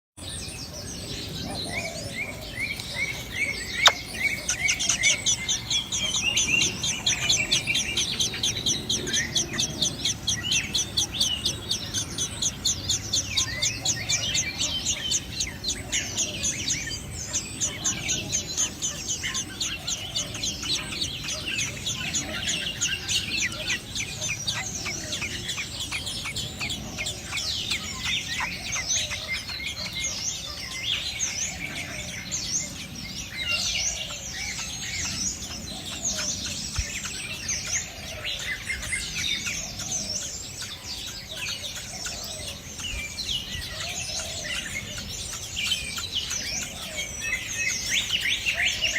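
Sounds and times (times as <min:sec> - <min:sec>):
low bird call: 0:00.2 - 0:32.3
baby birds begging chirps: 0:00.2 - 0:48.9.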